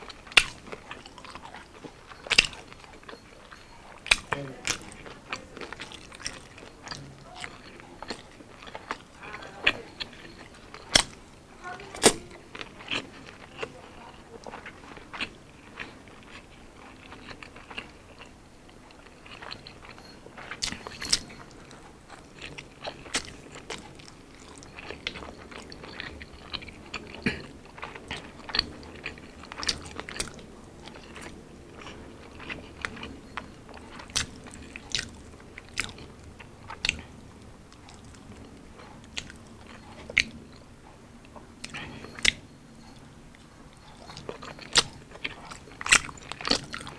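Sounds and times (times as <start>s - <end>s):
chewing and crunching food: 0.0s - 46.9s.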